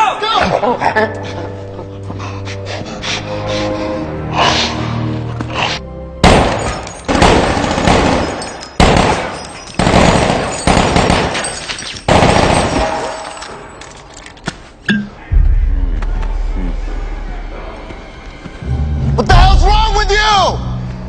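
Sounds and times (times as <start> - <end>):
loud gunshots with echo: 6.2 - 13.3.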